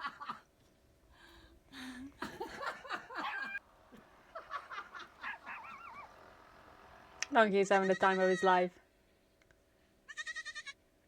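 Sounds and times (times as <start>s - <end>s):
laughter in choppy bursts: 2.1s - 6.1s.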